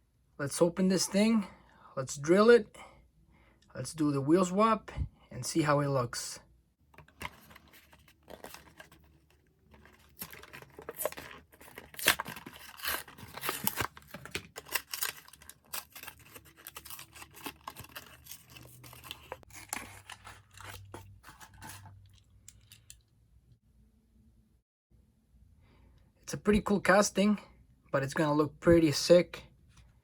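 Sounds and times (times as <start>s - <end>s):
cardboard and plastic packaging tearing: 7.0s - 21.9s.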